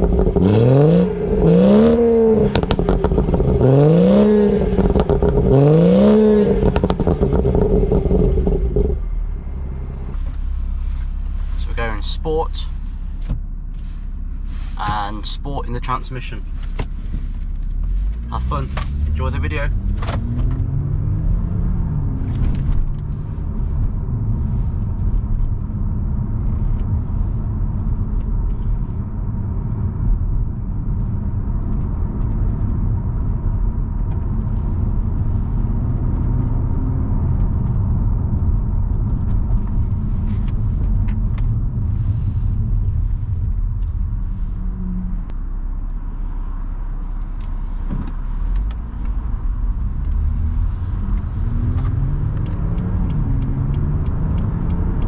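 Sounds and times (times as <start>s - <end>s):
exhaust pops: 0.0s - 13.8s
car engine accelerating: 0.0s - 55.0s.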